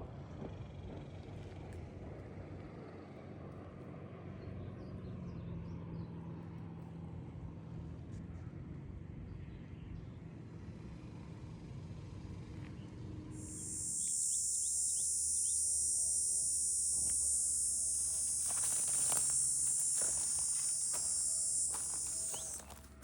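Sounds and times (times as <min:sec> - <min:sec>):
insect buzzing: 0:13.4 - 0:23.0
short chirps: 0:13.4 - 0:23.0
soft crackles: 0:16.2 - 0:23.0.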